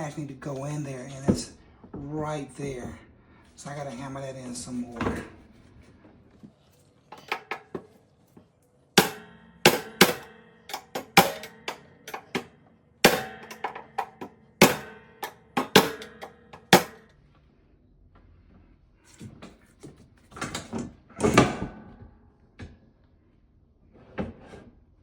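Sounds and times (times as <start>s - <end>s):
hammer striking metal: 7.1s - 7.8s, 9.0s - 17.1s.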